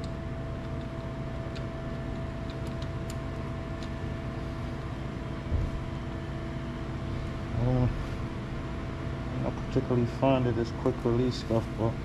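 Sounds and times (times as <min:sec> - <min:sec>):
mechanical hum: 0:00.0 - 0:12.0
dull thump: 0:05.5 - 0:05.8.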